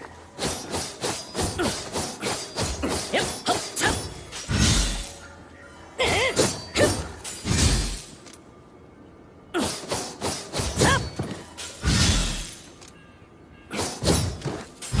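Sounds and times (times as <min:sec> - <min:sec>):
sword strikes and swishes: 0:00.3 - 0:05.2, 0:13.7 - 0:15.0.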